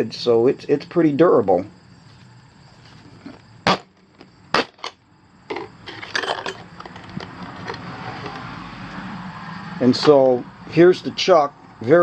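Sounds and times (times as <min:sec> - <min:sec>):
rustling: 0:02.0 - 0:04.3
sharp handling clicks and knocks: 0:04.0 - 0:08.5.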